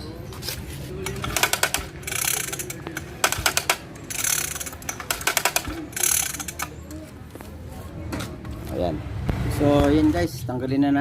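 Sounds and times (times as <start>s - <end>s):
pull starter rattling and clicking: 1.1s - 6.8s.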